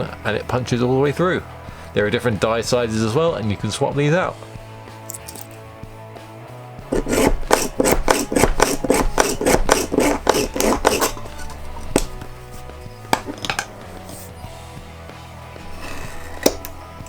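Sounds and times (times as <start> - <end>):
hole punch rasping through leather: 6.9 - 14.4, 15.6 - 17.0.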